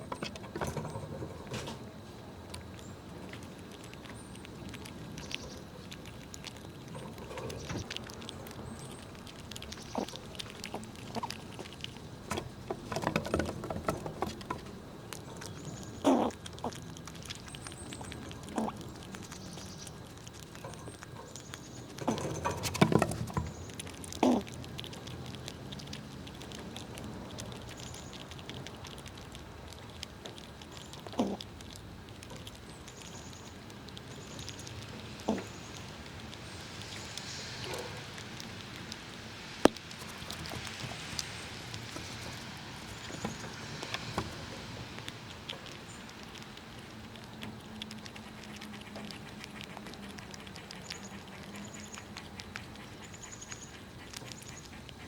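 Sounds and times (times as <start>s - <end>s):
squirrels cracking nuts: 0.0s - 55.0s
steady hiss: 31.4s - 55.0s.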